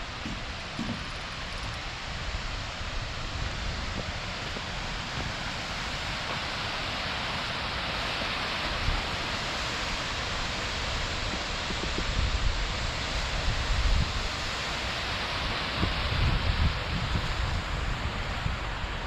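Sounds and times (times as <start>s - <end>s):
river water through rapids: 0.0s - 19.0s
wind buffeting microphone: 11.0s - 14.4s, 15.7s - 19.0s.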